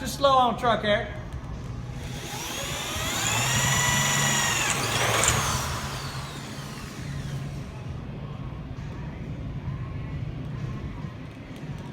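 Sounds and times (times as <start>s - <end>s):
electric drill winding down: 1.9s - 8.0s.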